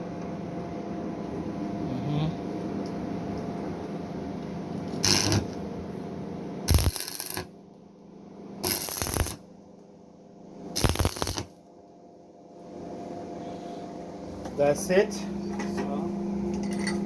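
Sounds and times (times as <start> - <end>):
steady electrical hum: 0.0 - 17.0
arc welding crackle: 5.0 - 5.6, 6.7 - 7.5, 8.6 - 9.5, 10.8 - 11.6.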